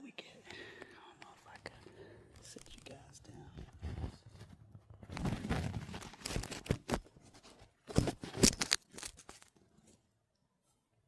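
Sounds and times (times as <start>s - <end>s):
phone handling rustling and scraping: 1.5s - 9.6s.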